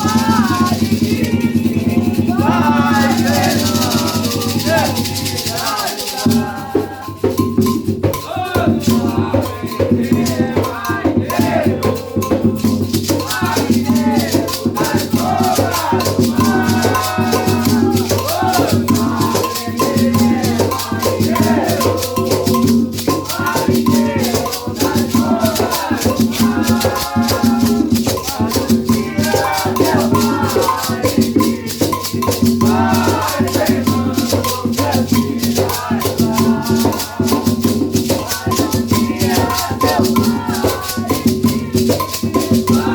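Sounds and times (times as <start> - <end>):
person chanting: 0.0 - 7.0
shaken rattle beat: 0.0 - 42.9.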